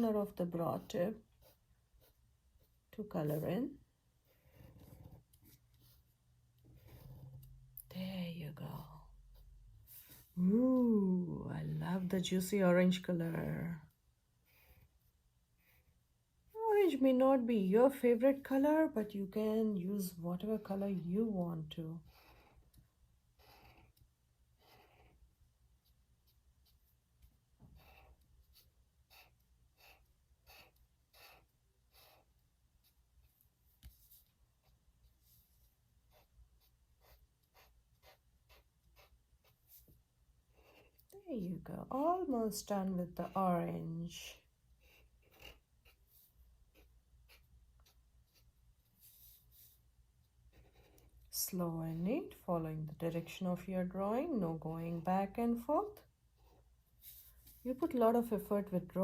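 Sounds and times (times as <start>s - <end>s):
marker scratching on paper: 0.4s - 3.6s, 22.0s - 41.1s, 44.8s - 49.9s, 50.5s - 52.3s, 56.4s - 58.7s.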